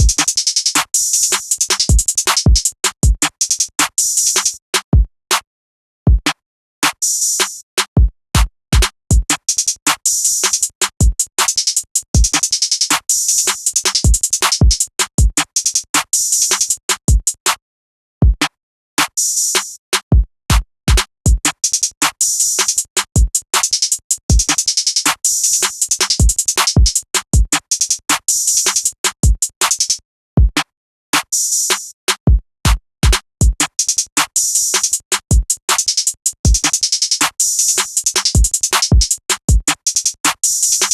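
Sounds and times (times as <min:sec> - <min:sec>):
hi-hat rolls: 0:11.4 - 0:14.8, 0:23.6 - 0:27.0, 0:35.8 - 0:39.2, 0:39.8 - 0:40.9.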